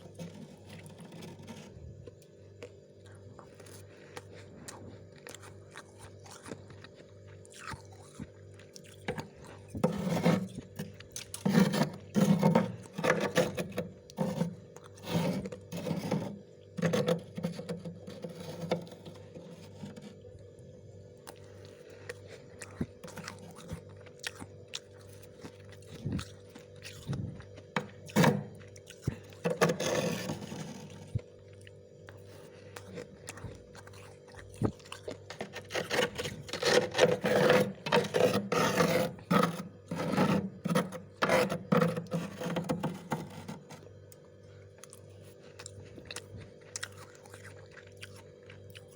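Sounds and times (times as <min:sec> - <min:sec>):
chewing crunchy frost: 0:00.0 - 0:48.9
steady low hum: 0:00.0 - 0:48.9.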